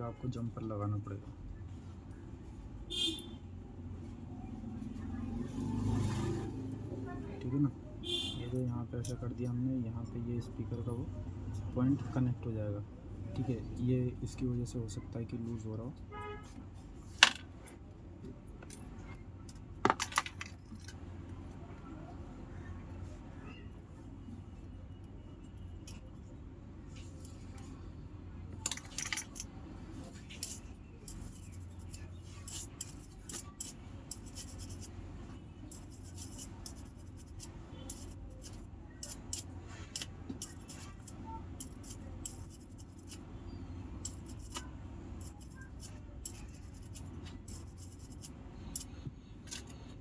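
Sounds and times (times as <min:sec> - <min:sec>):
metal tool clicking and scraping: 0:28.6 - 0:50.0.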